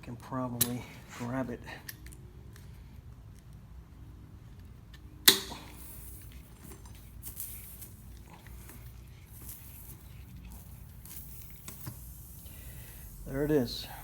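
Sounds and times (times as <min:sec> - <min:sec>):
faint handling clicks and rustles: 0:04.4 - 0:14.0
wire cutters metallic snap: 0:05.2 - 0:05.8.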